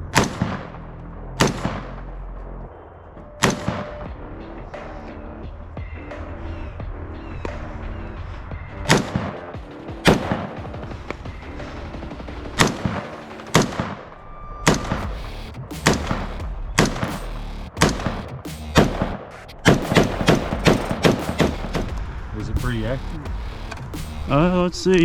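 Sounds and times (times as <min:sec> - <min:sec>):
rifle shots: 0:00.0 - 0:00.8, 0:01.4 - 0:02.2, 0:03.4 - 0:04.1, 0:08.9 - 0:09.4, 0:12.6 - 0:22.0
background music: 0:00.0 - 0:25.0.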